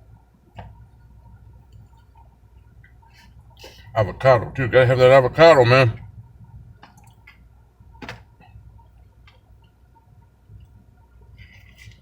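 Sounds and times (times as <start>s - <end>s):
steady low rumble: 0.0s - 6.8s.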